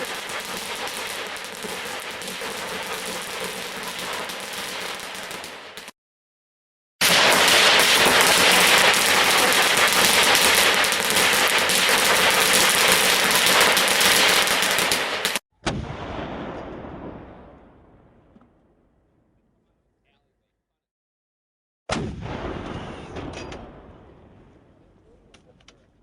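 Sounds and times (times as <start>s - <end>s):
fireworks bangs and crackles: 0.0s - 6.0s, 7.0s - 18.7s.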